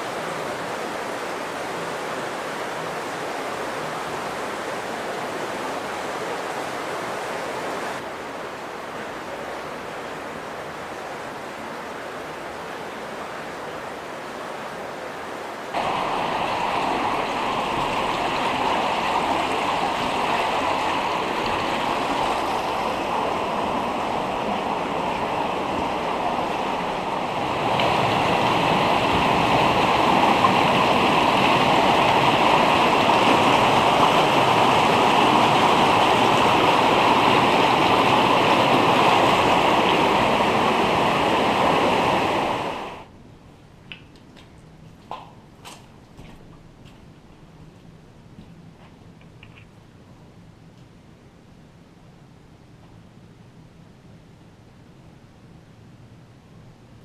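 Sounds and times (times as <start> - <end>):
running water rushing: 0.0 - 43.1.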